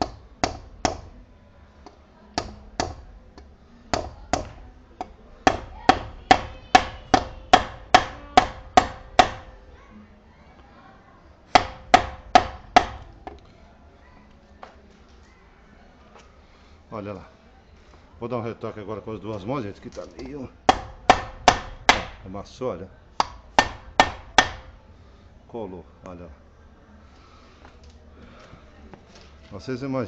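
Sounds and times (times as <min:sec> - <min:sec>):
hammer striking metal clamp: 0:00.0 - 0:01.1, 0:01.8 - 0:09.5, 0:20.2 - 0:22.2.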